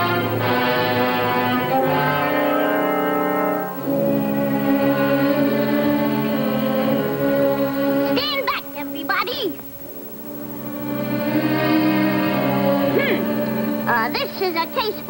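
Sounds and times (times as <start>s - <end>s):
orchestral chords: 0.0s - 15.0s.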